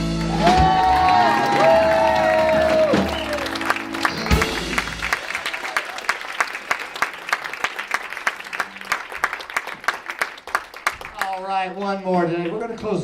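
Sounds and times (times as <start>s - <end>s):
audience applauding: 0.0s - 13.0s.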